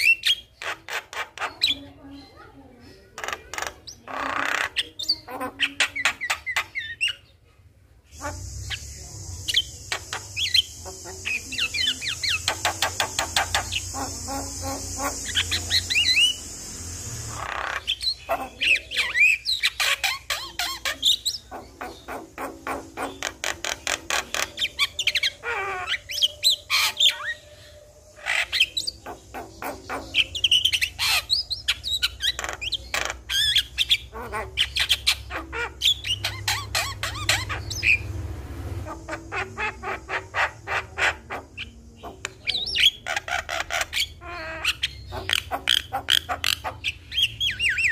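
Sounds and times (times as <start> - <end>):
mynas squawking and whistling: 8.1 - 38.1.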